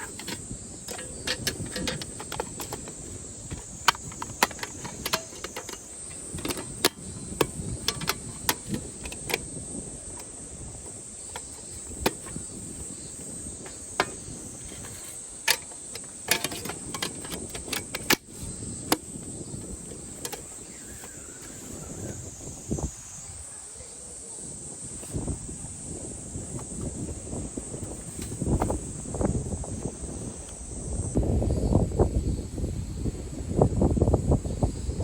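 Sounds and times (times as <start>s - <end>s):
sharp clicks and knocks of handling: 0.0s - 21.8s, 27.8s - 28.8s
insects trilling: 0.0s - 35.0s.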